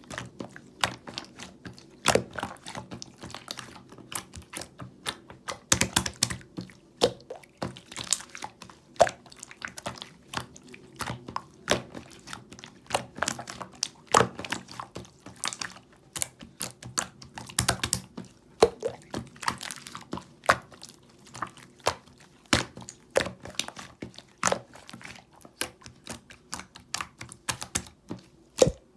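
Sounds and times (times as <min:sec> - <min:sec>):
slime squished by hand: 0:00.1 - 0:28.0, 0:28.6 - 0:28.9
slime air bubbles popping: 0:18.6 - 0:19.0, 0:28.6 - 0:28.9.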